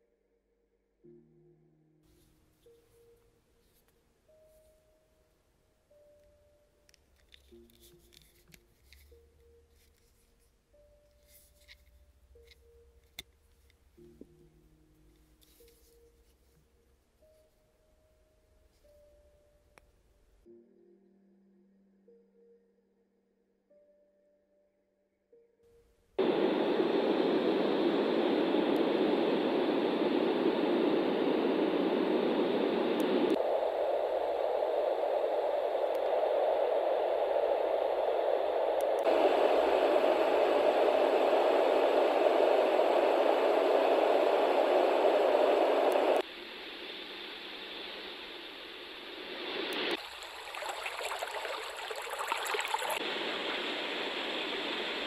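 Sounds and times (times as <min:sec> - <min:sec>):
white noise machine hiss: 0:26.2 - 0:55.0.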